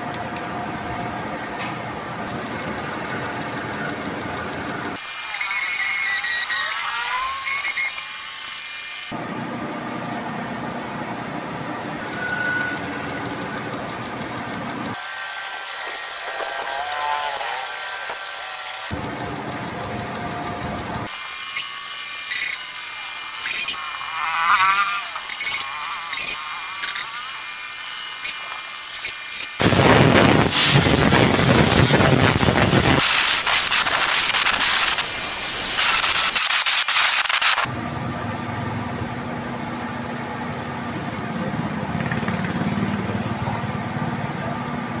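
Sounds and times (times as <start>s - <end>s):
sharp cutting clicks: 2.3s - 6.8s, 18.9s - 21.7s
metal lathe machining steel: 12.0s - 29.7s.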